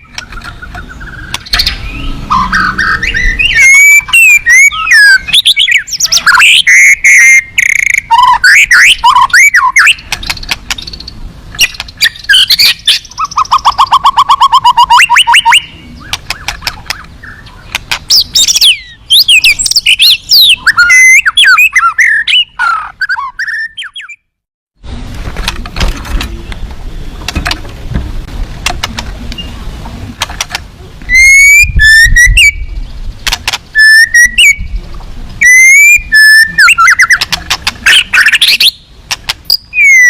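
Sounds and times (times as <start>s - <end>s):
fast even bird trill: 0.0s - 24.2s, 31.1s - 32.8s, 33.8s - 34.7s, 35.4s - 38.9s, 39.5s - 40.0s
songbird singing loudly: 0.0s - 24.4s, 31.1s - 33.0s, 33.7s - 34.8s, 35.4s - 40.0s.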